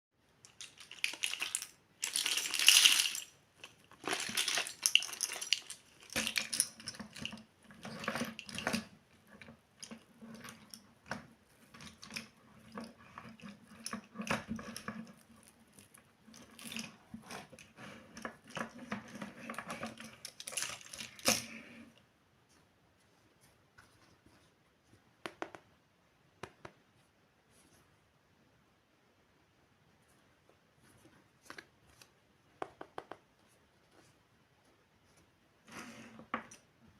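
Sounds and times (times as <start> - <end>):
toy pieces clicking: 0.4 - 7.4
plastic packaging crinkling: 0.4 - 8.8, 19.8 - 21.6.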